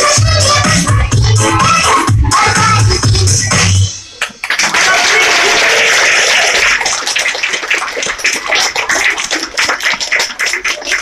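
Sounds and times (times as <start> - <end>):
audience applauding: 4.2 - 11.0.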